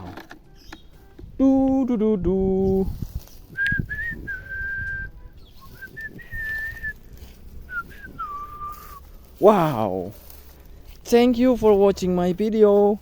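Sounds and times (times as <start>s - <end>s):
person whistling a tune: 3.5s - 7.1s, 7.7s - 9.0s.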